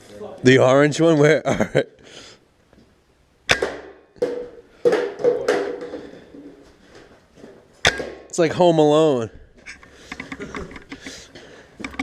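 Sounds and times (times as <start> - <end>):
paintball marker shots: 3.5 - 4.0, 7.8 - 8.2.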